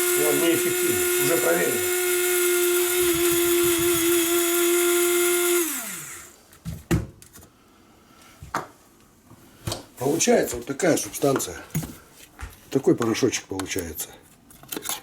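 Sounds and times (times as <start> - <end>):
electric coffee grinder running: 0.0 - 6.4.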